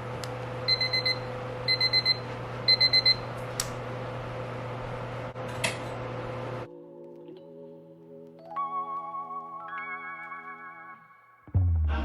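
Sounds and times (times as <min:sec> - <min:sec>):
electronic alarm beeping: 0:00.7 - 0:03.2.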